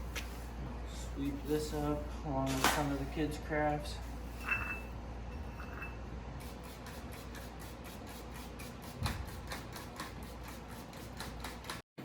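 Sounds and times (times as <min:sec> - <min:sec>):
broom sweeping floor: 0:00.0 - 0:04.8.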